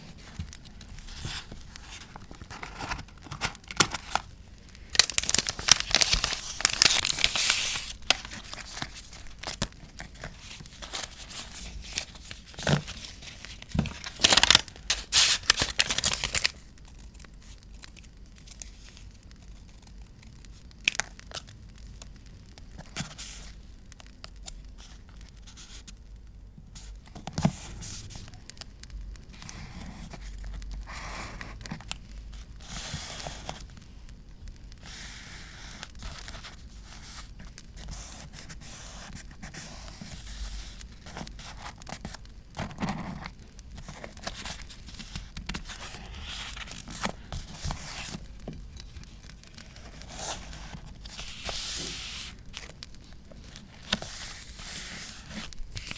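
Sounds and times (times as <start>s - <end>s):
paper tearing and crinkling: 4.9s - 16.7s, 39.4s - 55.9s.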